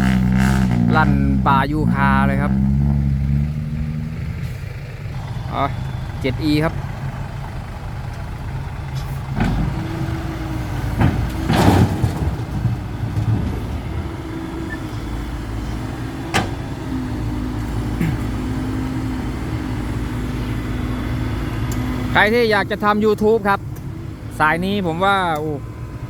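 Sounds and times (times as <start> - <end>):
diesel engines running: 0.0 - 26.0
loud crash: 10.9 - 13.6.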